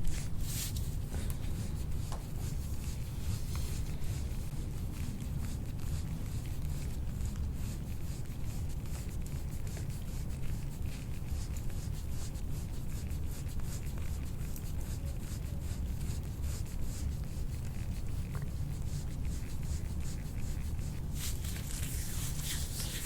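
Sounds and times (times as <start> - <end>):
hands rubbing skin: 0.0 - 4.5, 19.0 - 23.0
steady low hum: 0.0 - 23.0.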